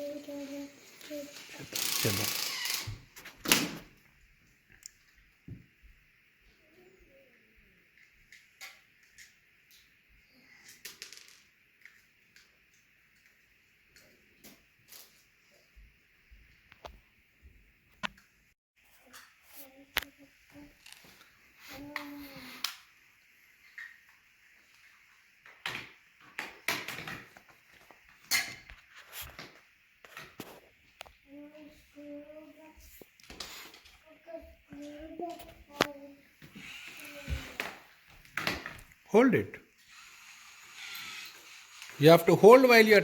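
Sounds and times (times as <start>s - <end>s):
plastic parts knocking and clattering: 25.5s - 27.6s.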